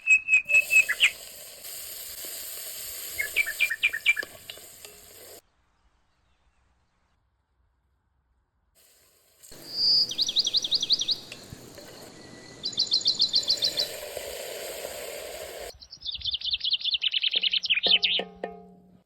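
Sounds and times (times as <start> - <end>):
background hiss: 0.0 - 7.2, 8.8 - 16.7
songbird trilling: 9.5 - 14.1, 15.8 - 18.3.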